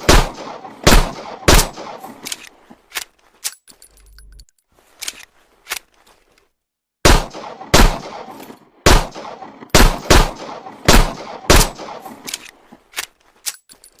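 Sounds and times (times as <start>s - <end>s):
imitated pistol shots: 0.0s - 2.4s, 7.0s - 12.4s.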